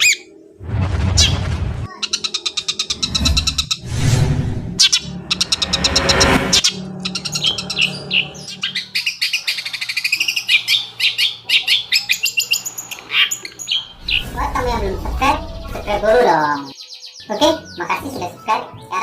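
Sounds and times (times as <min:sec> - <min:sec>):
bird chirps and trills: 0:01.2 - 0:19.0
bird harsh rasping call: 0:06.6 - 0:14.4.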